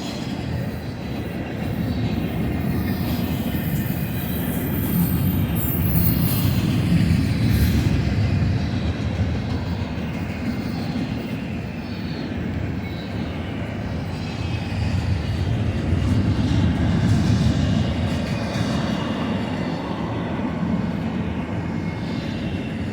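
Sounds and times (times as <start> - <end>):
freight train wheels rumbling on rail: 0.0 - 22.9.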